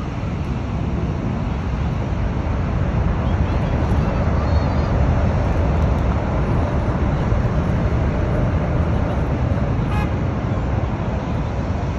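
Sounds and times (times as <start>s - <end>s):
jet engines roaring: 0.0s - 11.9s.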